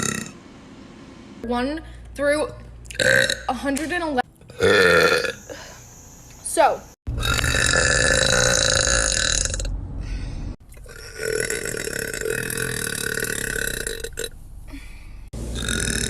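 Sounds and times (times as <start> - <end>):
person burping: 2.9 - 3.5, 4.5 - 5.7, 7.1 - 9.7, 10.7 - 14.3, 15.6 - 16.0.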